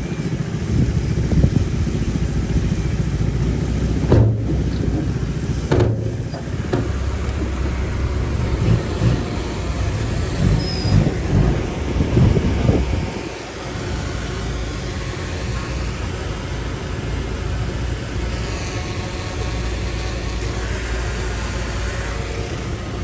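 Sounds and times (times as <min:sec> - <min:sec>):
heavy diesel machinery running: 0:00.0 - 0:23.0
knocks and rattles: 0:04.0 - 0:07.9.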